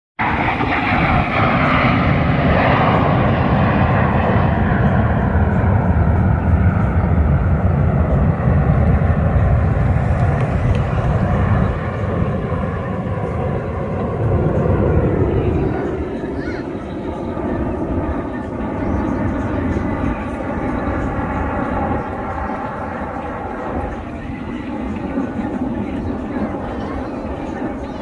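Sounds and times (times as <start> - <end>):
fighter jet rumble: 0.2 - 23.1.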